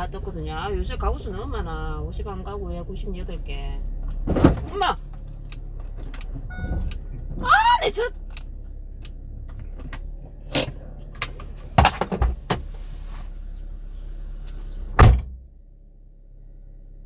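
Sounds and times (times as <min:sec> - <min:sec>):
steady low hum: 0:00.0 - 0:17.0
car door slamming shut: 0:04.2 - 0:04.8, 0:14.9 - 0:15.5.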